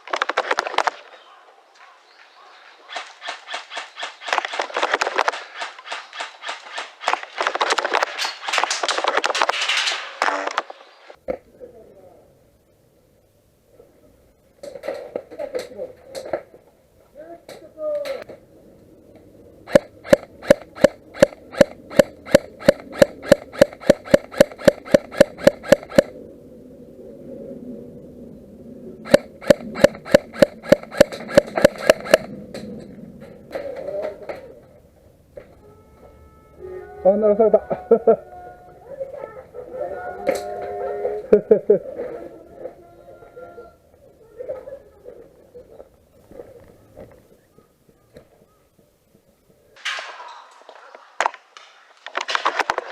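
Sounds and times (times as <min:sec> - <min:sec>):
airsoft gun shots: 0:19.7 - 0:26.1, 0:29.1 - 0:32.3.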